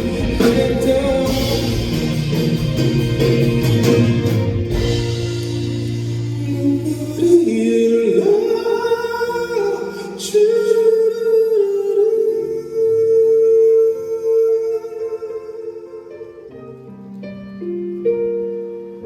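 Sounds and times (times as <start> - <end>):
drums: 0.0 - 8.0
held keyboard notes: 0.0 - 10.9
live pop ballad with singer: 0.0 - 16.6.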